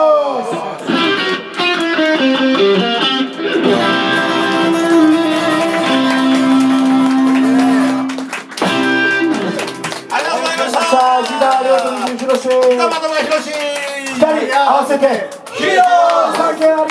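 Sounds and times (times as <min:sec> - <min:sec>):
acoustic guitar picking: 0:00.9 - 0:08.1.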